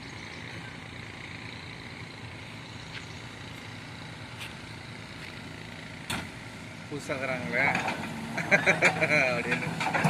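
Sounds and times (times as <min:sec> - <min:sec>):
excavator diesel engine running: 0:00.0 - 0:10.0.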